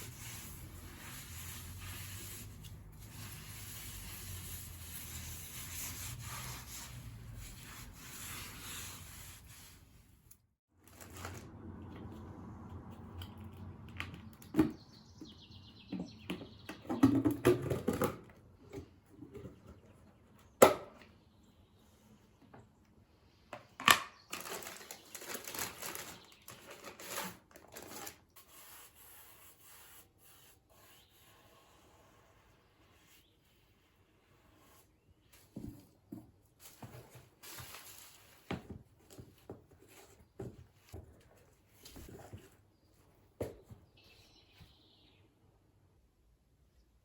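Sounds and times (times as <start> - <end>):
rubbing and scrubbing: 0.0 - 10.3.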